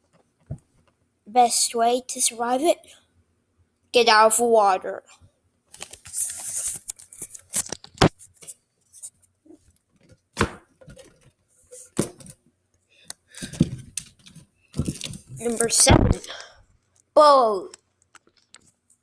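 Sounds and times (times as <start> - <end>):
rustling and scraping: 5.7 - 10.2, 10.8 - 12.4, 13.3 - 16.4.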